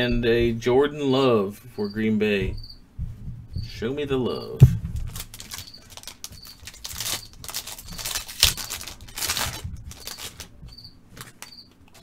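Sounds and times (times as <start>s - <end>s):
cards being handled: 5.0s - 10.5s, 11.1s - 12.0s
foil pack crinkling and tearing: 5.0s - 10.6s.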